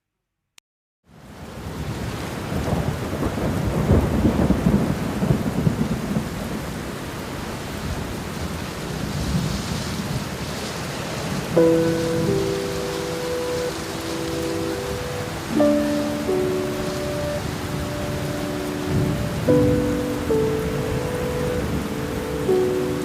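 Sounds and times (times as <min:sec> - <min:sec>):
steady rain: 0:01.1 - 0:23.0
low rumble of thunder: 0:01.7 - 0:06.9.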